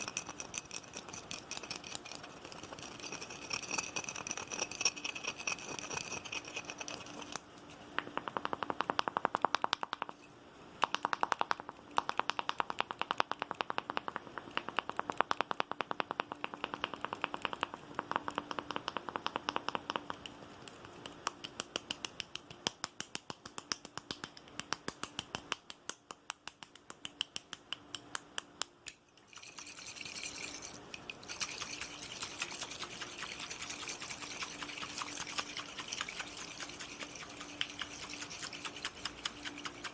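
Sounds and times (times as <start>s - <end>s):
fast sharp tapping: 8.0s - 10.2s, 10.8s - 39.9s.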